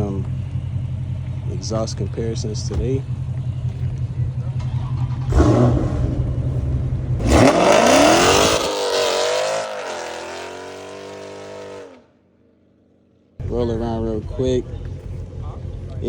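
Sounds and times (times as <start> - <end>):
car exhaust revving: 0.0 - 12.0.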